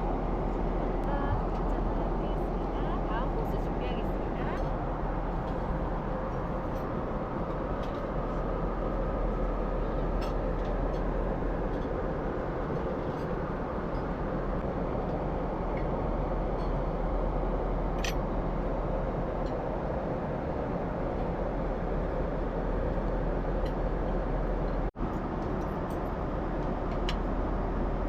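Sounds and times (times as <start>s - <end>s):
airliner cabin engine roar: 0.0s - 28.0s.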